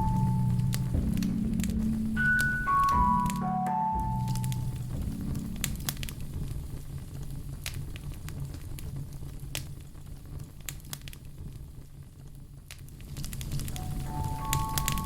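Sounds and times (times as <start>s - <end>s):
fire rumbling: 0.0s - 3.2s, 4.0s - 15.0s
fire crackling and popping: 0.0s - 3.5s, 4.1s - 15.0s.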